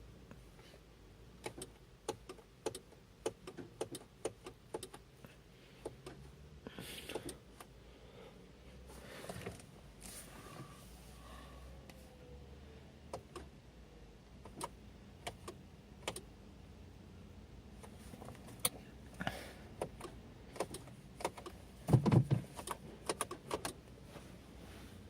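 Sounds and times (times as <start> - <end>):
car starter clicking: 1.4 - 5.0, 19.8 - 23.8.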